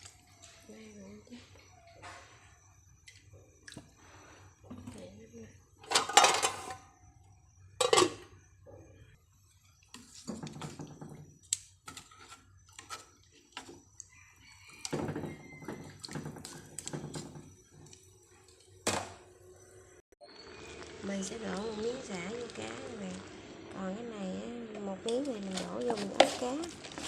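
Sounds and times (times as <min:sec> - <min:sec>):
dishes and utensils clattering: 0:05.8 - 0:06.8, 0:07.8 - 0:08.4.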